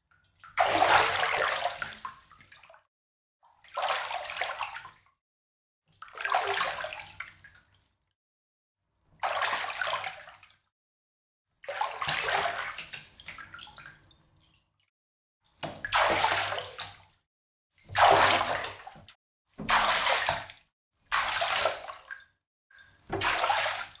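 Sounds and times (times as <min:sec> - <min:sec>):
water splashing: 0:00.6 - 0:02.0, 0:15.7 - 0:16.9, 0:17.9 - 0:18.9, 0:19.6 - 0:20.5, 0:21.1 - 0:22.1, 0:23.1 - 0:24.0.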